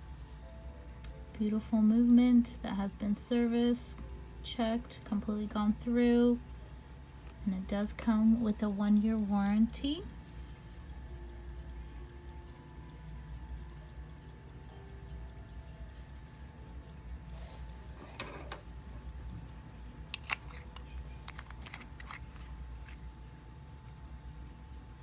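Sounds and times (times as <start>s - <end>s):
pocket watch ticking: 0.0s - 25.0s
sharp click: 17.3s - 24.9s.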